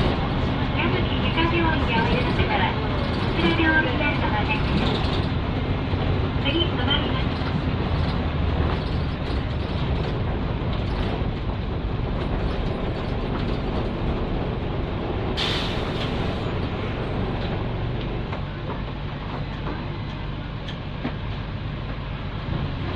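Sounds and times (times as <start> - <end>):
bus diesel engine running: 0.0 - 22.9
air release hiss: 15.4 - 16.4.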